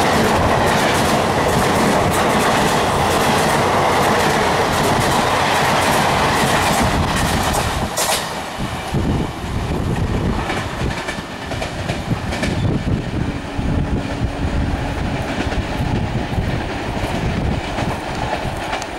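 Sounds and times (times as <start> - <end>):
train rushing past: 0.0 - 18.9.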